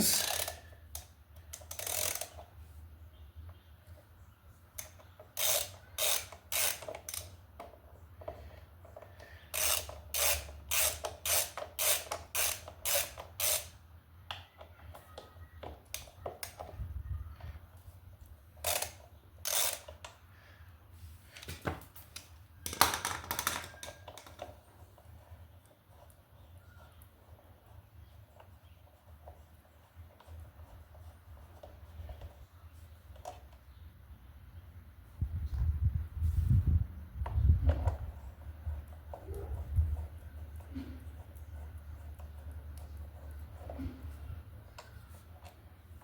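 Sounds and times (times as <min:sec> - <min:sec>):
socket ratchet clicking: 0:00.1 - 0:02.5, 0:04.8 - 0:07.4, 0:09.5 - 0:13.8, 0:18.6 - 0:20.2.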